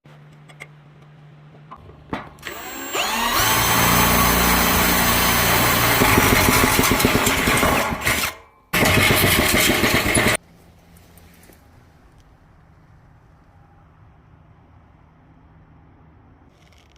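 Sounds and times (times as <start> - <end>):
small motor whining: 2.4 - 8.3.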